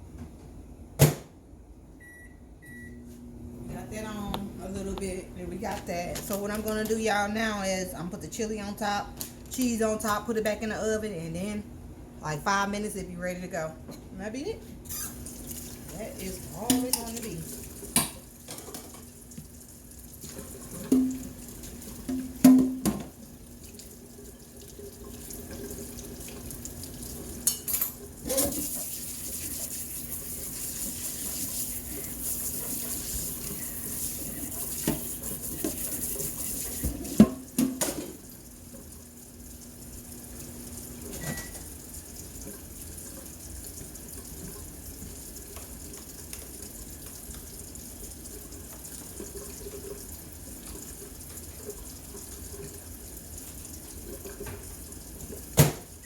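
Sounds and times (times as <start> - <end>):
sink tap running: 14.9 - 56.0.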